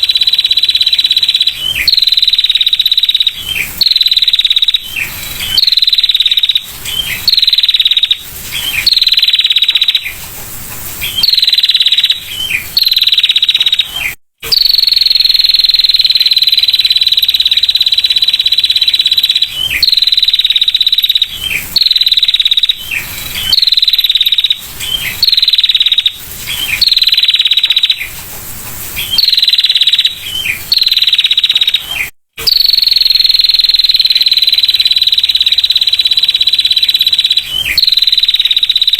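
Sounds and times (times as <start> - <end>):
bird trilling: 0.0 - 10.2, 11.0 - 28.1, 29.0 - 38.9.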